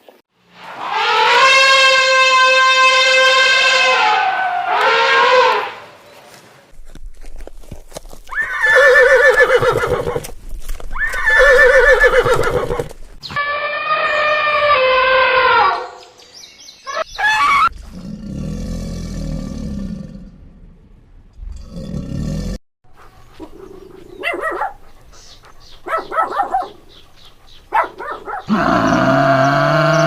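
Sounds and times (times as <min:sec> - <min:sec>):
horses neighing: 0:08.3 - 0:10.3, 0:10.9 - 0:13.0, 0:28.5 - 0:30.0.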